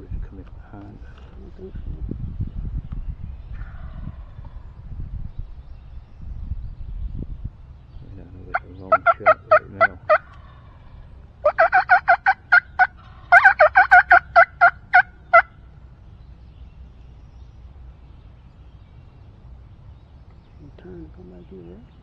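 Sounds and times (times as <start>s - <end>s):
turkey yelping: 8.5s - 15.6s.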